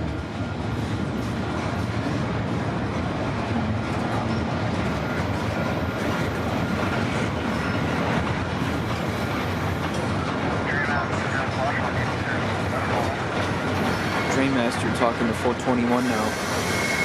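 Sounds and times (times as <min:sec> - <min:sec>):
train wheels rumbling on rails: 0:00.0 - 0:17.0.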